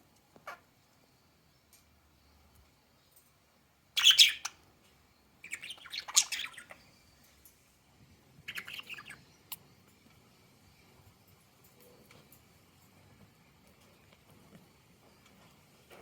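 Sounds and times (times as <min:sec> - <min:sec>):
budgerigars chirping and chattering: 0:04.0 - 0:04.6, 0:05.4 - 0:06.9, 0:08.5 - 0:09.3.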